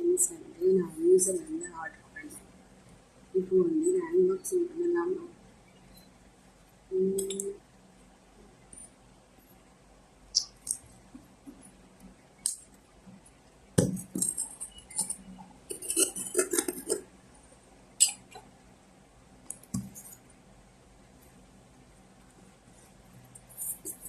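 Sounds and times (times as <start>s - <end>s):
glasses clicking and knocking: 13.8s - 17.0s.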